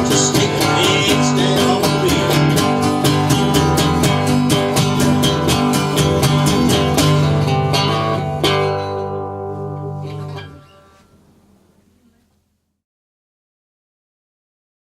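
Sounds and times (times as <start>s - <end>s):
acoustic guitar strumming: 0.0s - 11.7s.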